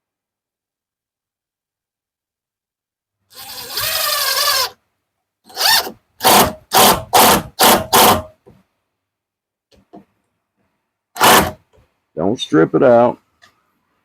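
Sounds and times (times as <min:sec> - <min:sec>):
power drill driving a screw: 0:03.3 - 0:04.8, 0:05.5 - 0:08.3, 0:11.2 - 0:11.6.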